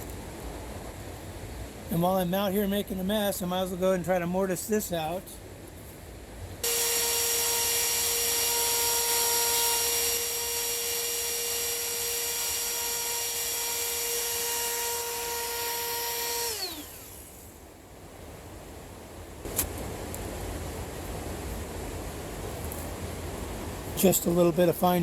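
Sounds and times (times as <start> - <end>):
power tool whining and winding down: 6.6 - 17.6.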